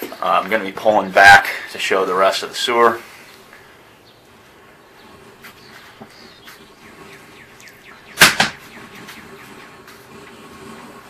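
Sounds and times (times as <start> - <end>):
loud clunk: 8.2 - 8.7.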